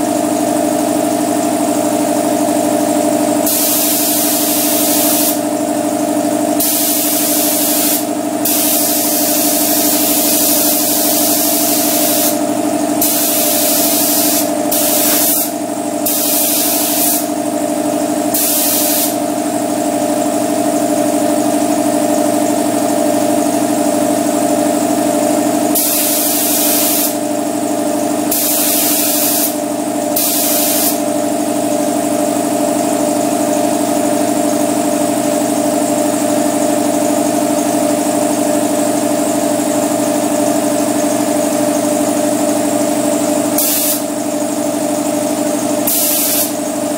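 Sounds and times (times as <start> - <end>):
steady machine drone: 3.1 - 34.9
spray gun hissing bursts: 3.5 - 5.4, 6.6 - 12.4, 13.0 - 17.3, 18.3 - 19.2, 25.8 - 27.2, 28.3 - 29.6, 30.2 - 31.0, 43.6 - 44.1, 45.9 - 46.6.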